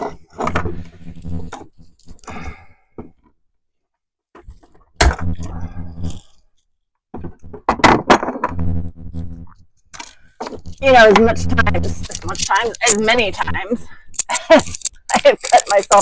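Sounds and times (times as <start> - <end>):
person sighing and grunting: 2.2 - 2.7.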